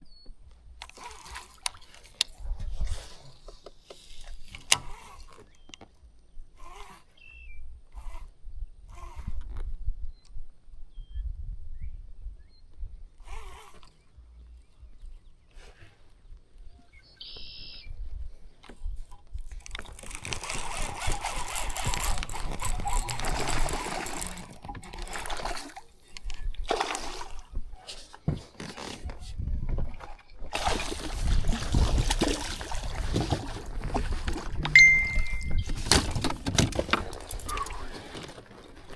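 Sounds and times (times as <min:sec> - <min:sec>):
fishing reel clicks: 0:00.8 - 0:02.5, 0:19.5 - 0:26.5
bird chirping: 0:16.7 - 0:17.9
water splashing and trickling: 0:19.4 - 0:38.9.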